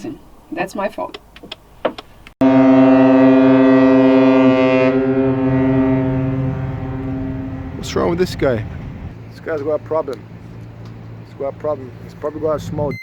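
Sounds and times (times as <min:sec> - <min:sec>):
ship's horn blast: 0:02.4 - 0:09.1.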